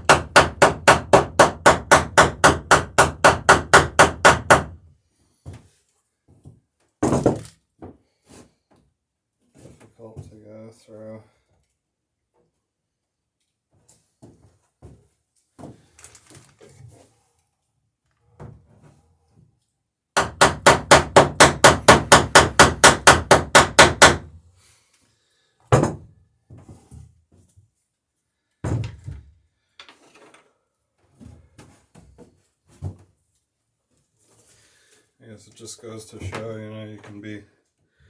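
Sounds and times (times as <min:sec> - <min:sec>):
hammer riveting wooden planks: 0:00.0 - 0:04.8, 0:20.2 - 0:24.2.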